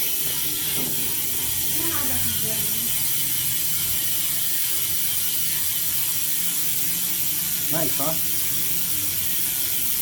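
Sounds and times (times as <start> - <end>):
bicycle hub freewheeling buzz: 0.0 - 10.0.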